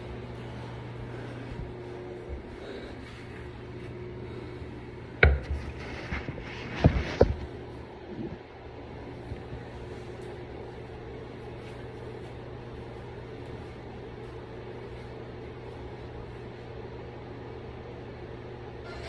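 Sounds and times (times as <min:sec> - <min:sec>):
low background hum: 0:00.0 - 0:19.0.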